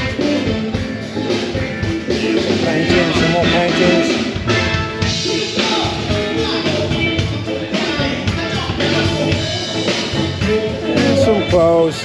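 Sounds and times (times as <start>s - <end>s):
band playing music: 0.0s - 12.0s
person singing: 5.1s - 12.0s.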